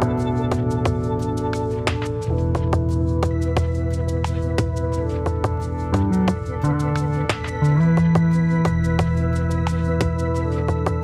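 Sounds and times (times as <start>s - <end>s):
light guitar: 0.0s - 11.0s
ticking percussion beat: 0.0s - 11.0s.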